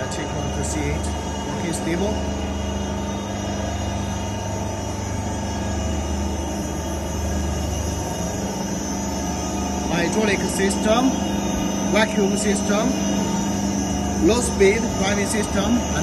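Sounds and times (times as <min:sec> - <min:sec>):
mixer machine humming: 0:00.0 - 0:16.0.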